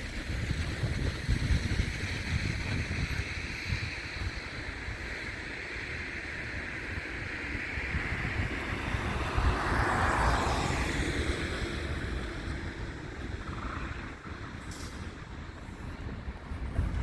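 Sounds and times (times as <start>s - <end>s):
wind rumbling on microphone: 0.0s - 17.0s
vehicle driving past: 7.9s - 14.4s.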